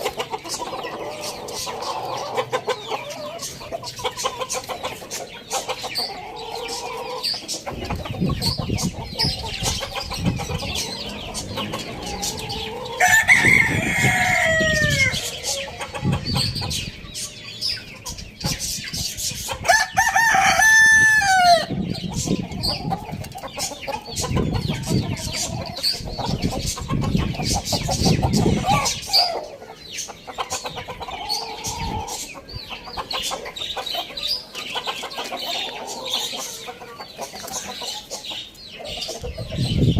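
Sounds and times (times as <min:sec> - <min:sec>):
chickens clucking: 0:00.0 - 0:39.9
rooster crowing: 0:11.6 - 0:15.4, 0:19.7 - 0:21.7.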